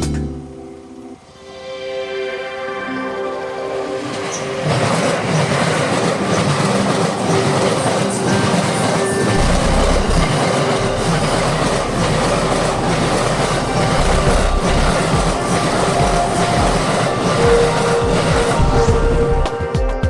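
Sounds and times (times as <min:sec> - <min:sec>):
train wheels clattering over rails: 0:04.0 - 0:19.6.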